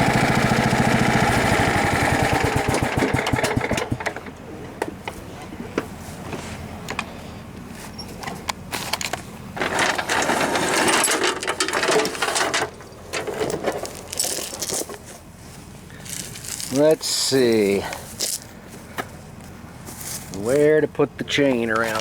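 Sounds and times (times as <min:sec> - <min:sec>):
loud rough noise: 0:00.0 - 0:04.3
metal chain clinking and rattling: 0:13.4 - 0:15.0.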